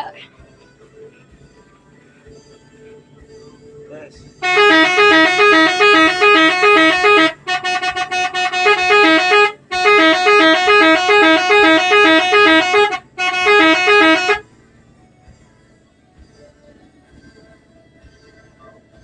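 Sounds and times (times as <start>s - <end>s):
musical bus air horn: 4.4s - 14.5s.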